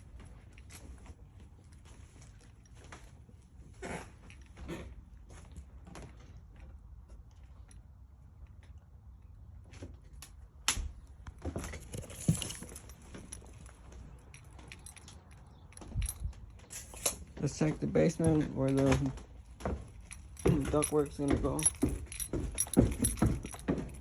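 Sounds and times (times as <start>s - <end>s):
small knocks and rattles: 11.2s - 24.0s
thumps and rustling: 11.4s - 15.0s, 18.2s - 24.0s
footsteps: 15.7s - 24.0s.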